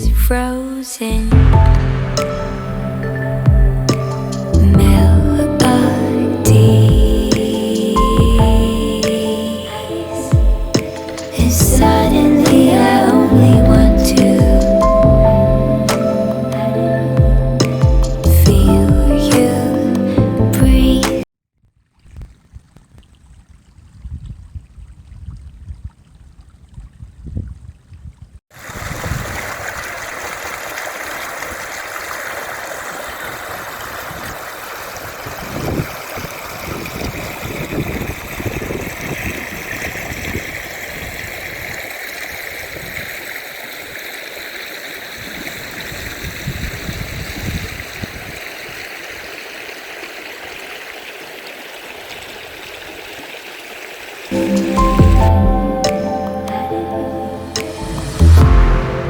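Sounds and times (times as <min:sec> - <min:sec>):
faint low rumbling: 0:00.0 - 0:09.0, 0:09.6 - 0:21.0
water flowing: 0:00.0 - 0:21.2, 0:28.6 - 0:59.0.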